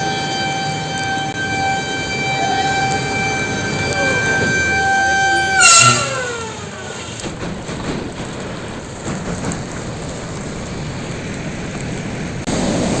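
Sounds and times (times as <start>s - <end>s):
air raid siren: 0.0s - 7.8s.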